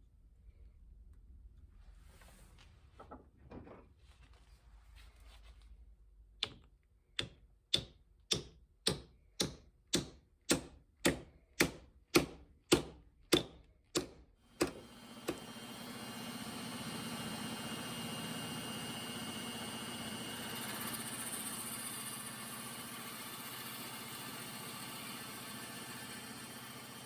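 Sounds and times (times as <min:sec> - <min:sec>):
motor running: 0:14.5 - 0:27.0.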